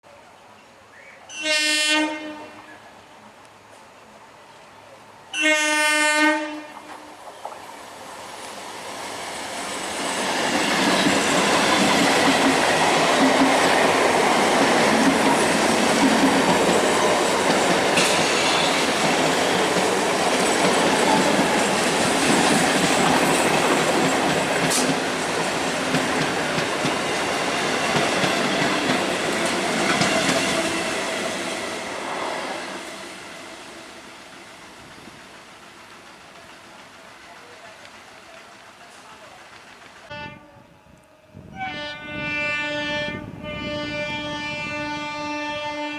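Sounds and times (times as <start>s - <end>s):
train horn blasts: 1.3s - 2.8s, 5.3s - 7.2s, 40.1s - 45.9s
train wheels clattering over rail joints: 9.7s - 30.8s.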